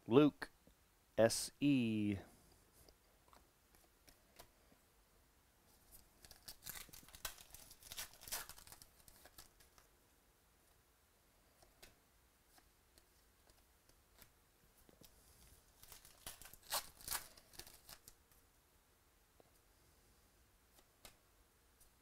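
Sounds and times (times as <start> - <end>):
card pack wrapper tearing: 6.2 - 9.8, 15.8 - 18.2.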